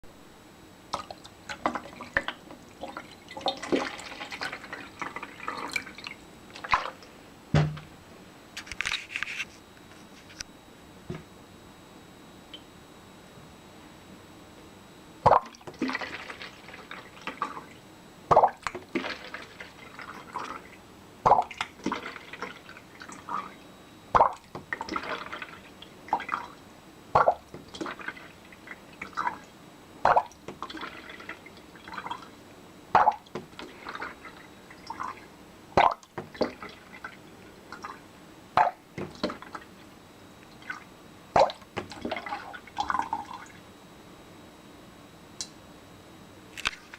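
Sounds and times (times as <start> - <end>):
water glugging between bottles: 0.9 - 7.0, 15.2 - 17.7, 18.3 - 23.6, 24.2 - 26.6, 27.2 - 29.4, 30.0 - 32.3, 33.0 - 35.2, 35.8 - 38.0, 38.6 - 39.7, 40.5 - 43.5
water plops and drips: 41.4 - 43.4.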